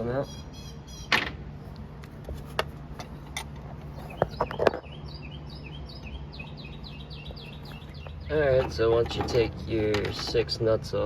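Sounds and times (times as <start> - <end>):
small bird chirping: 3.8 - 9.9.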